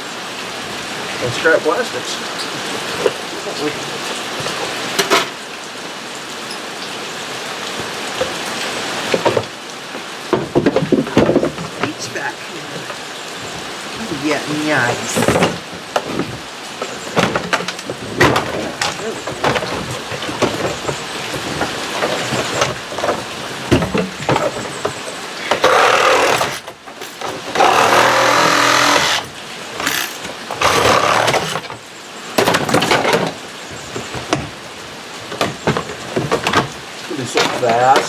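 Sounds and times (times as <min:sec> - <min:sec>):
plastic scraping and rattling: 0:10.3 - 0:38.0
plastic clips clicking and cracking: 0:25.4 - 0:31.7.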